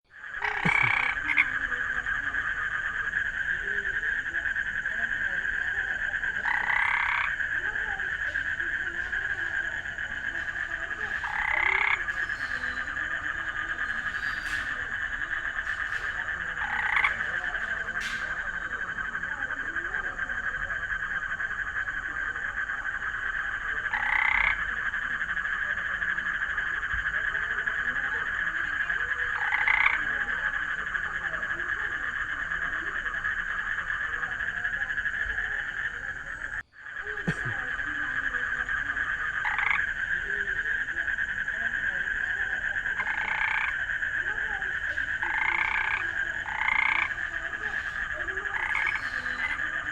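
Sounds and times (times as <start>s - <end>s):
frog chorus trilling: 0.0s - 49.9s
loud frog call: 0.1s - 49.9s.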